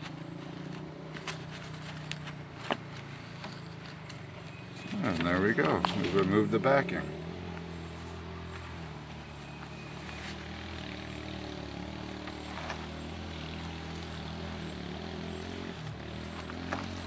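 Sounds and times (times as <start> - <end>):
engine idling hum: 0.0 - 17.0.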